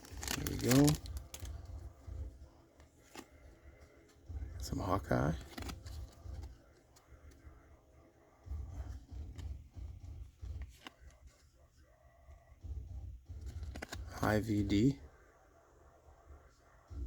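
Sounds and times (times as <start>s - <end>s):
trading cards rustling: 0.0s - 11.5s, 13.2s - 15.0s.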